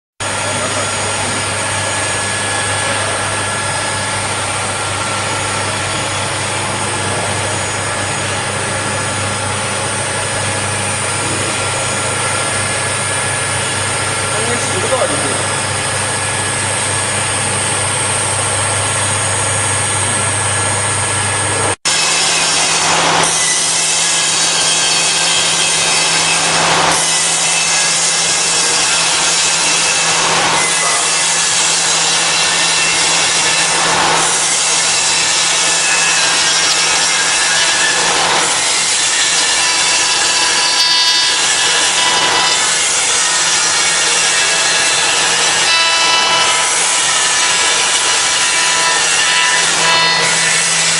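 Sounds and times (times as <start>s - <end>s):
constant machine hum: 0.2s - 50.9s
router spindle cutting wood: 0.2s - 50.9s.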